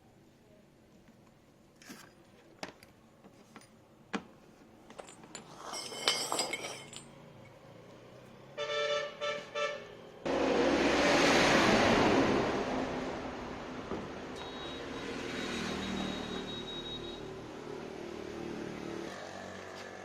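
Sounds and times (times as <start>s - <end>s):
metallic clinking: 4.9s - 7.6s
steady rushing noise: 10.3s - 13.9s
washing machine beeps: 14.4s - 17.3s.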